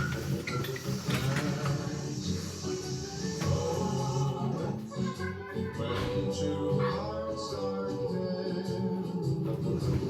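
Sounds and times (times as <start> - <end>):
old-fashioned pop music: 0.0 - 10.0.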